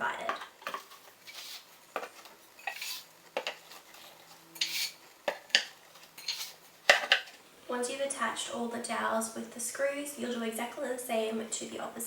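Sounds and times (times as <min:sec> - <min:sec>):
short scraping sounds: 0:02.6 - 0:03.1.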